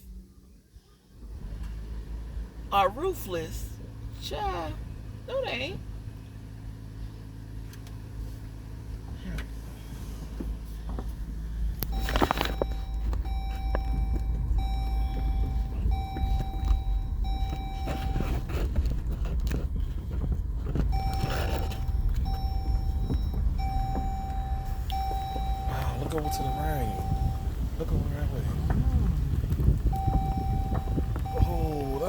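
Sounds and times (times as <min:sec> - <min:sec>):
car engine rumbling: 0:00.0 - 0:32.0
electronic warning chime: 0:11.9 - 0:18.4, 0:21.0 - 0:27.5, 0:30.0 - 0:32.0.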